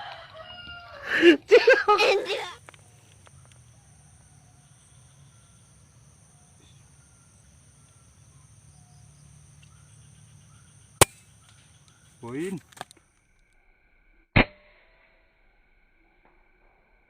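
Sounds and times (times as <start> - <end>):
faint bird calls: 2.7 - 13.2
air rifle shot: 11.0 - 11.4.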